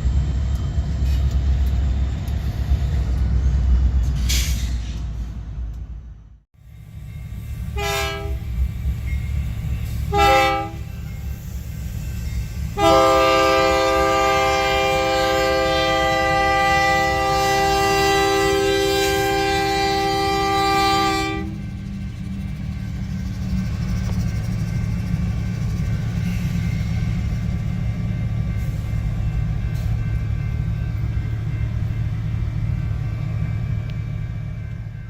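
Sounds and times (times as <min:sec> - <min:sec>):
train rumbling: 0:00.0 - 0:35.0
locomotive air horn blasts: 0:07.7 - 0:08.5, 0:10.1 - 0:10.9, 0:12.8 - 0:21.7.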